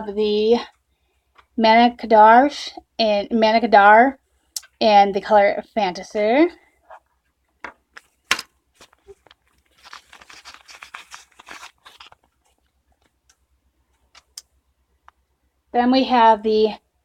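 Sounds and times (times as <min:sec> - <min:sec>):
packaging crinkling: 0:07.9 - 0:13.3.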